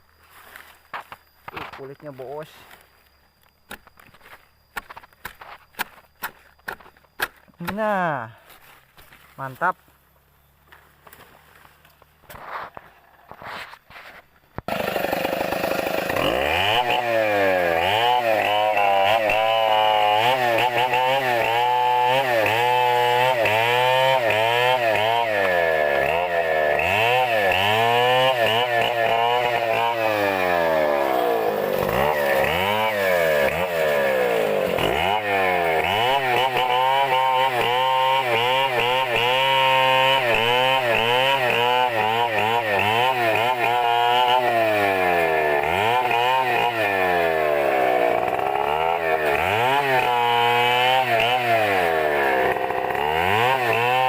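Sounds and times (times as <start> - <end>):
chainsaw cutting wood: 0.2 - 9.6, 10.7 - 54.0.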